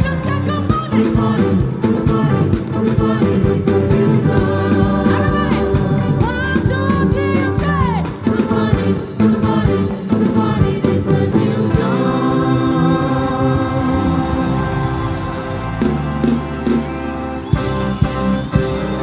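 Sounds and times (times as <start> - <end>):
congregation singing gospel: 0.0 - 19.0
live band with steady beat: 0.0 - 19.0.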